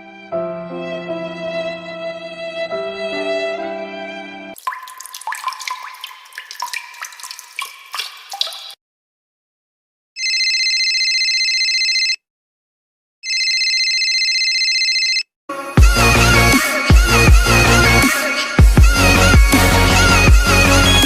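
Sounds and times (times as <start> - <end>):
watery plinks and drips: 4.6 - 8.8.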